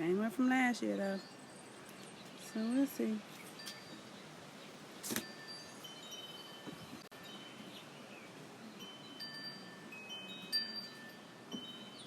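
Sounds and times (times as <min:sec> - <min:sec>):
wind chimes ringing: 0:00.8 - 0:04.2, 0:05.1 - 0:12.0.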